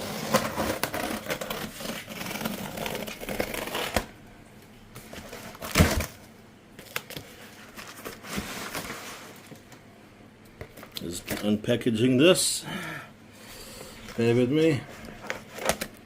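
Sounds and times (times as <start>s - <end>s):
packaging rustling and crinkling: 5.0s - 9.8s.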